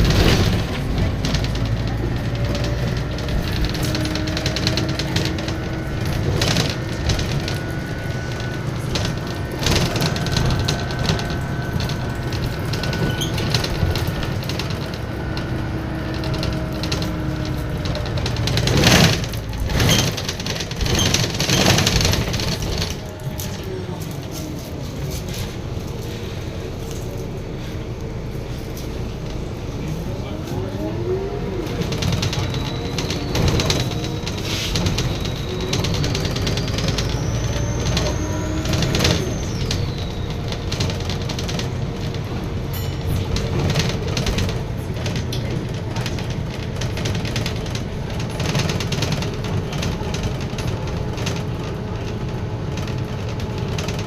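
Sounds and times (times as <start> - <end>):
gearbox whining: 0.0 - 27.3, 28.0 - 54.0
bus body rattles and knocks: 0.0 - 54.0
bus diesel engine running: 0.0 - 54.0
turbo whistling: 31.7 - 43.0.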